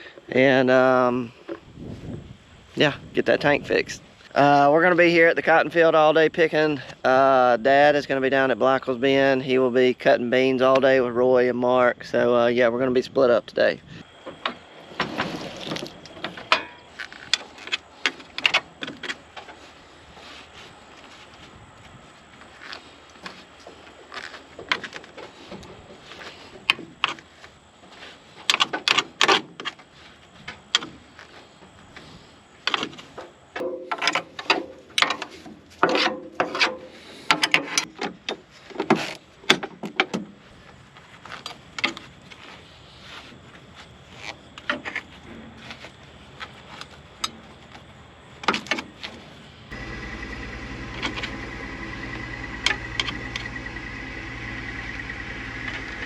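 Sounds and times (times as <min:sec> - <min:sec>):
engine hum: 0:49.7 - 0:56.0
steady high tone: 0:49.7 - 0:56.0.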